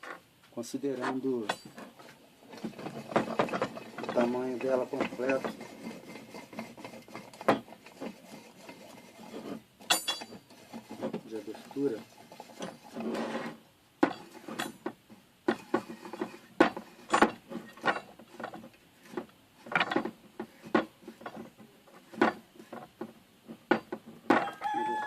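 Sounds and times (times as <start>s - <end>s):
metal vise scraping: 0.9s - 24.6s
sharp metal clicks and knocks: 9.8s - 11.4s, 14.0s - 24.5s.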